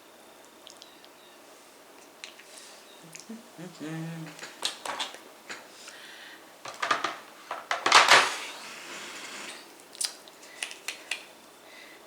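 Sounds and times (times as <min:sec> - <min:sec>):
makeup containers clattering: 0:06.7 - 0:08.4.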